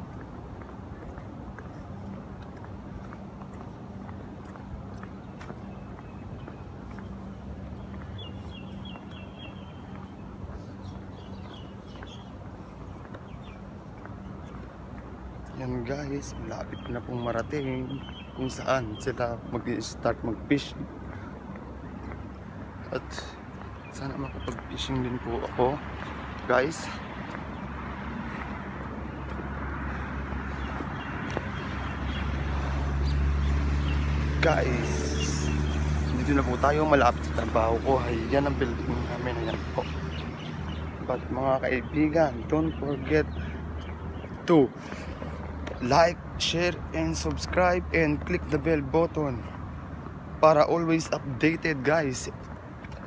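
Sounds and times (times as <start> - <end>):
faint footsteps on path: 0.0 - 53.0
road traffic: 0.0 - 53.0
vehicle engine hum approaching: 0.0 - 53.0.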